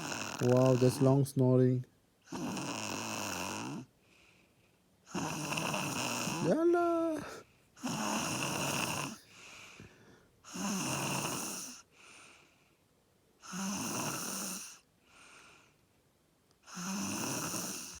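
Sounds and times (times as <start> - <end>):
man snoring: 0.0 - 1.2, 2.3 - 3.9, 5.1 - 9.2, 10.5 - 11.9, 13.4 - 14.8, 16.7 - 18.0
soft breaths: 3.9 - 16.0.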